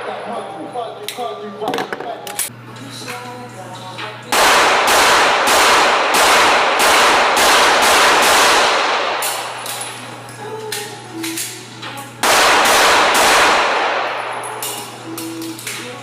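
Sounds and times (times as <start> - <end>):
rapid gunfire: 4.4 - 9.6, 12.2 - 14.3.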